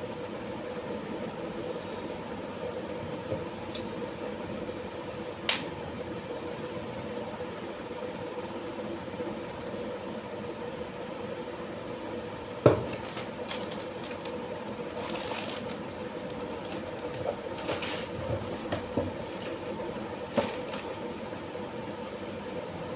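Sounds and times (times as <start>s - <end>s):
steady background hum: 0.0s - 22.9s
packaging rustling: 12.7s - 21.5s.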